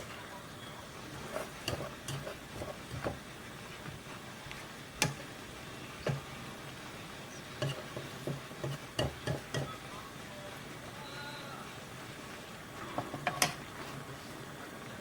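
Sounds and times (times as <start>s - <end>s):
utensils knocking on cookware: 1.2s - 3.2s, 5.0s - 5.3s, 6.0s - 6.3s, 7.6s - 9.8s.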